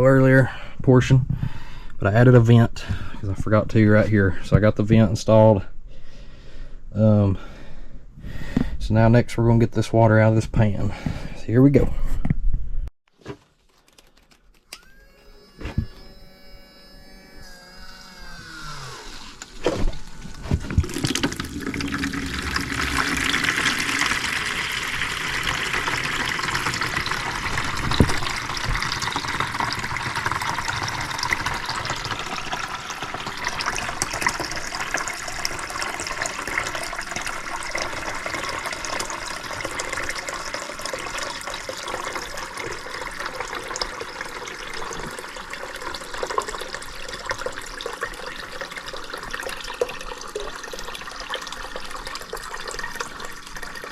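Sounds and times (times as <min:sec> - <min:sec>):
water splashing into a bucket: 0:19.5 - 0:53.9.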